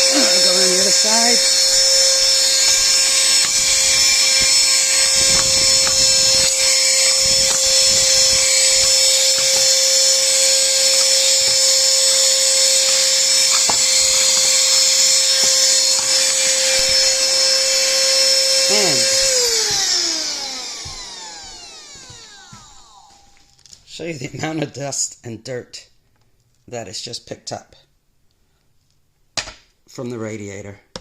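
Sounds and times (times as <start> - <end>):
handheld vacuum motor whining: 0.0 - 23.6.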